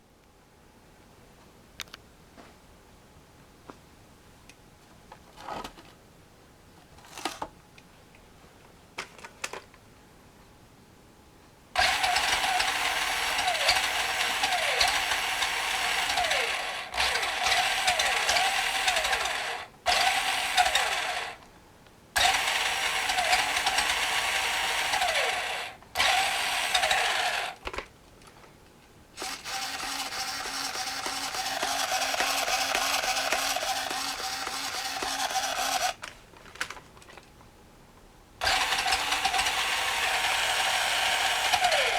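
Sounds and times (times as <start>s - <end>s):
electric toy car motor running: 11.8s - 21.4s, 22.2s - 27.6s, 29.2s - 36.0s, 38.4s - 41.9s.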